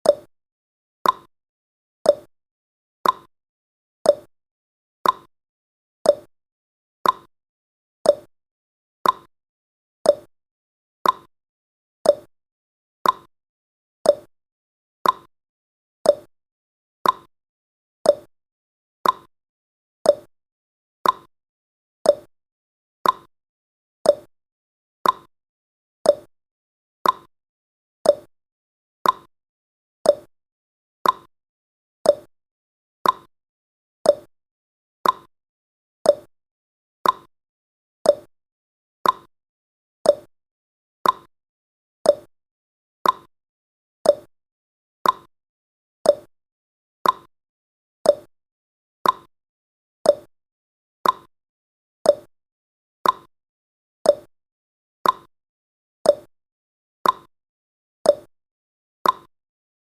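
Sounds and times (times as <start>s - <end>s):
clock ticking: 35.0s - 35.3s, 39.0s - 39.3s, 41.0s - 41.3s, 47.0s - 47.3s.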